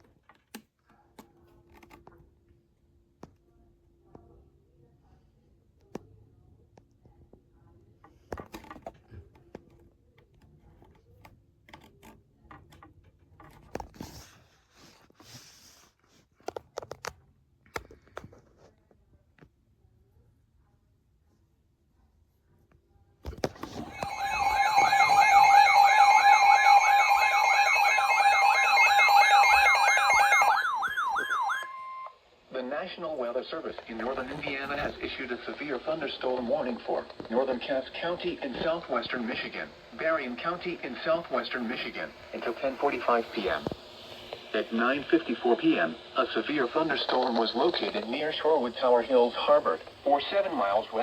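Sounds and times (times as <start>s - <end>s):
electronic weather alert alarm: 23.8s - 32.2s.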